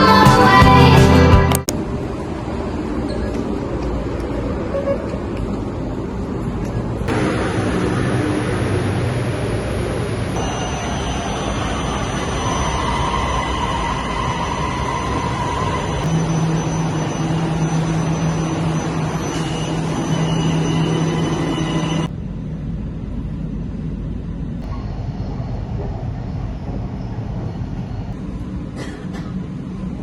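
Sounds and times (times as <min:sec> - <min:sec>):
vehicle running noise from inside: 0:00.6 - 0:10.9.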